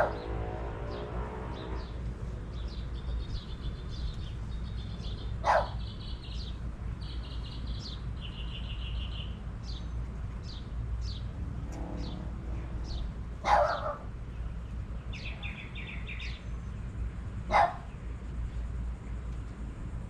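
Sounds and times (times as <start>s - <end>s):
dog barking: 0.0s - 0.3s, 5.4s - 5.8s, 13.4s - 14.1s, 17.5s - 17.9s
low background rumble: 0.0s - 20.0s
songbirds chirping and trilling: 0.0s - 20.0s.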